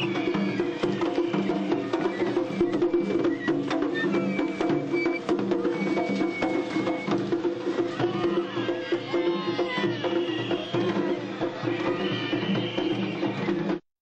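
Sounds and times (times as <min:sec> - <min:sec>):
high whistle-like notes: 0:00.0 - 0:07.2
fast drum and percussion strokes: 0:00.0 - 0:13.8.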